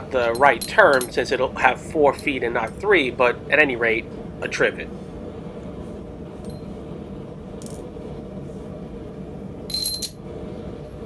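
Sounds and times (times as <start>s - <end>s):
steady low hum: 0.0s - 11.0s
metal pieces clinking: 9.7s - 10.2s.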